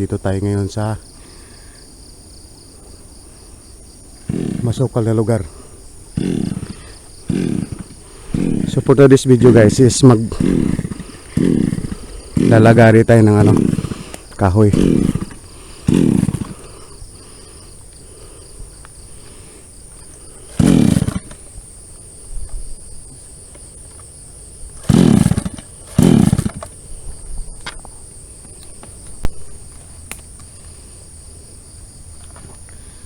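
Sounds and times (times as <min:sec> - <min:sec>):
crickets buzzing: 0:00.0 - 0:33.0
chainsaw idling: 0:04.1 - 0:33.0
chainsaw revving: 0:04.2 - 0:18.4, 0:19.1 - 0:22.3, 0:23.4 - 0:27.0.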